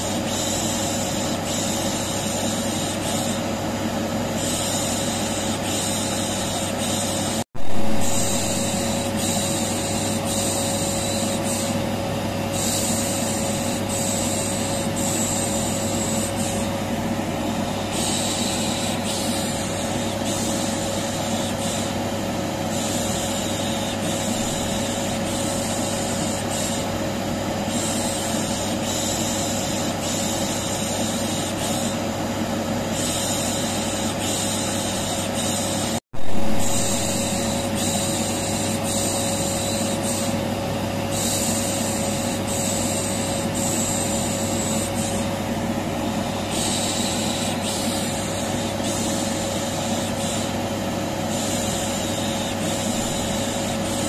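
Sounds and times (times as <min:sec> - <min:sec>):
vacuum cleaner humming: 0:06.9 - 0:28.2, 0:36.2 - 0:49.7.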